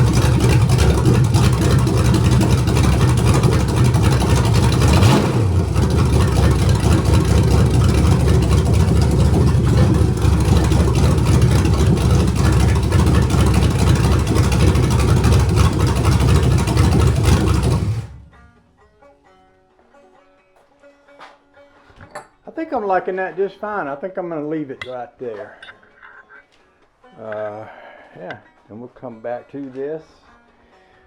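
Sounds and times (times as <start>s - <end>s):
car engine fast idle: 0.0s - 18.4s.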